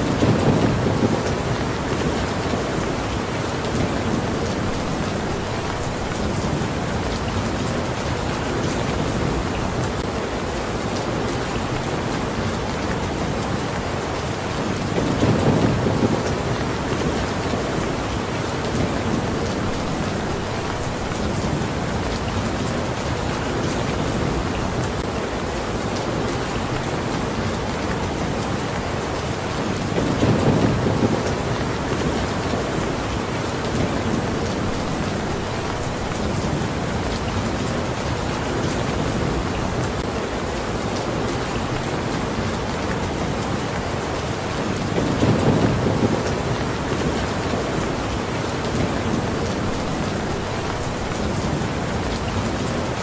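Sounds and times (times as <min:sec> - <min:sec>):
low thunder rumbles: 0:00.0 - 0:02.8, 0:15.0 - 0:17.9, 0:30.0 - 0:32.1, 0:44.9 - 0:47.0
steady rain: 0:00.0 - 0:53.0.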